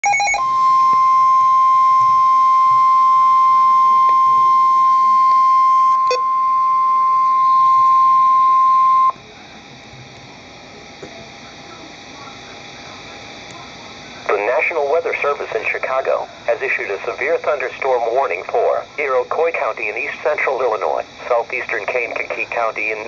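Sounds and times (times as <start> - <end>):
steady high alarm tone: 0.0 - 9.2
faint radio hiss: 8.8 - 23.0.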